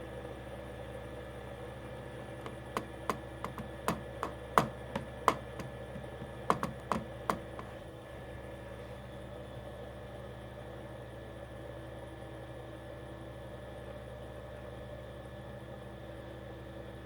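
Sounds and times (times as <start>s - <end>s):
steady background hum: 0.0s - 12.2s
sharp clicks and light taps: 2.4s - 7.8s.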